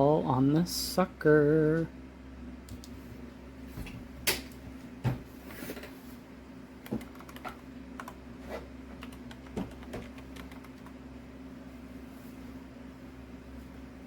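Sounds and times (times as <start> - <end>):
steady low hum: 0.0 - 14.0
typing on a keyboard: 6.8 - 8.2, 9.0 - 11.0.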